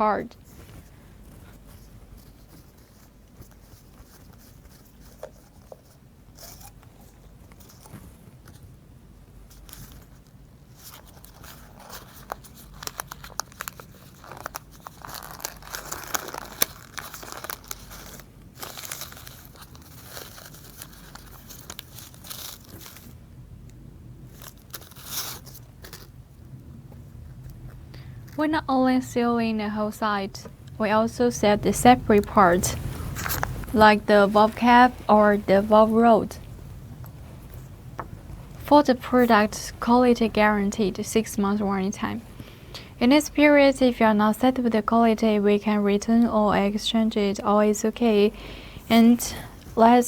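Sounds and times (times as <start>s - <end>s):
plastic packaging crinkling: 9.5s - 23.2s, 24.3s - 26.2s, 31.9s - 38.7s.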